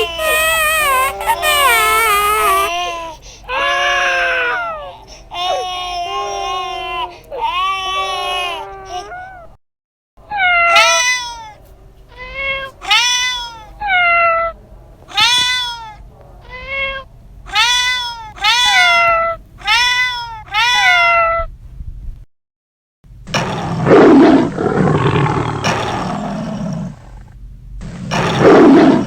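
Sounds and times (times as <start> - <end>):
cat meowing: 0.0 - 9.5, 10.2 - 21.5.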